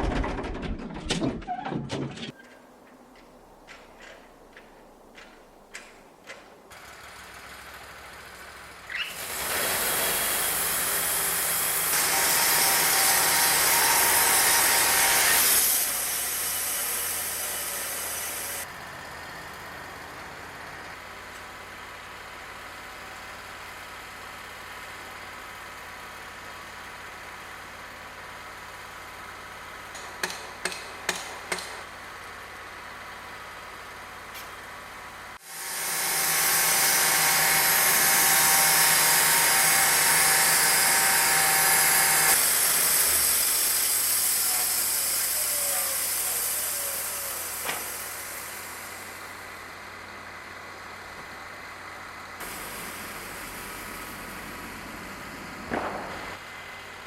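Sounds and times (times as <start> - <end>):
sharp knocks: 30.0 - 31.8.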